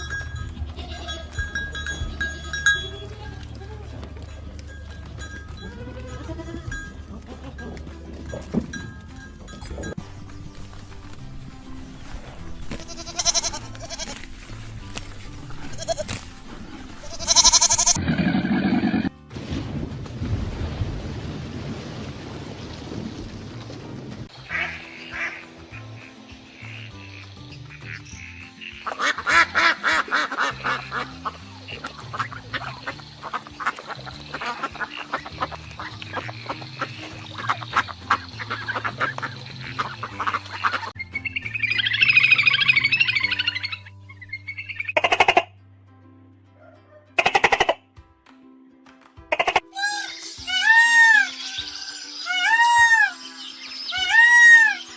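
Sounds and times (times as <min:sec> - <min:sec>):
background music with bass line: 0:00.0 - 0:20.4, 0:24.1 - 0:46.6
goat bleating: 0:00.4 - 0:04.2, 0:05.6 - 0:07.8, 0:12.8 - 0:14.2, 0:15.6 - 0:16.2, 0:17.0 - 0:18.0
ducks quacking: 0:15.5 - 0:19.1, 0:24.4 - 0:45.5, 0:49.3 - 0:54.9.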